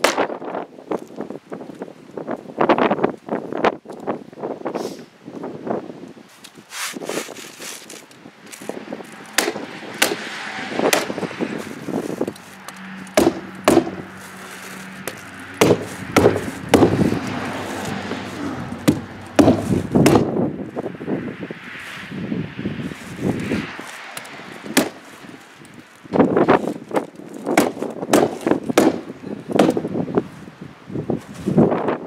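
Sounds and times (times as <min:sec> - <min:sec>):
roofing rustling: 0:06.2 - 0:20.9, 0:22.8 - 0:31.9
hammer tacker striking staples: 0:09.4 - 0:10.2, 0:10.9 - 0:11.2, 0:13.0 - 0:14.0, 0:15.0 - 0:17.0, 0:18.8 - 0:20.3, 0:24.8 - 0:25.0, 0:27.6 - 0:29.0, 0:29.6 - 0:29.8.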